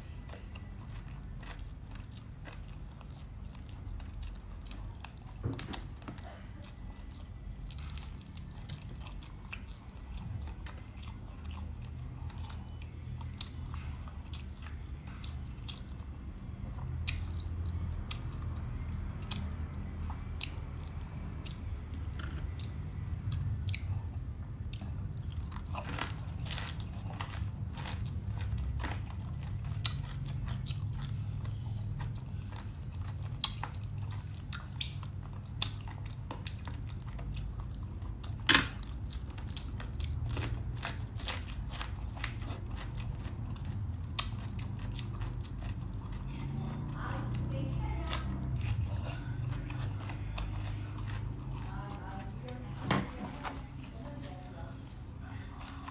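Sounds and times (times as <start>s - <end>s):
chewing and crunching food: 0.0s - 55.9s
low steady hum: 0.0s - 55.9s.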